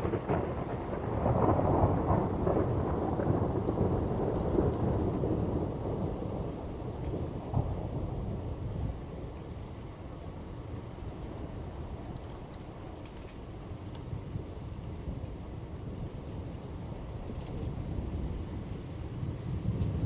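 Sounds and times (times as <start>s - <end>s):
sharp thunder crack: 0.0s - 6.0s
steady rain: 0.0s - 20.0s
thunder rumbling: 0.0s - 20.0s.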